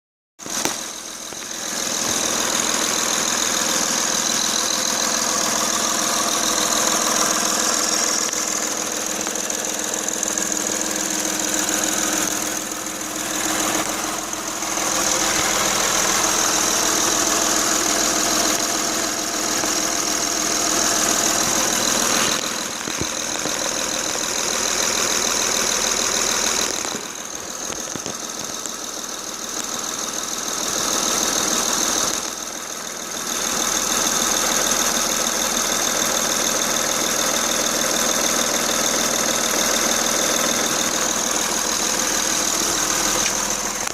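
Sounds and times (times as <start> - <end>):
car engine idling with knock: 0.4 - 43.9.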